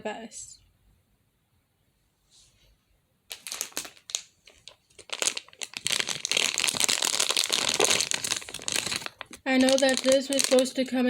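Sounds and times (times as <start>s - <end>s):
crinkly wrapper crumpling: 3.3s - 11.0s.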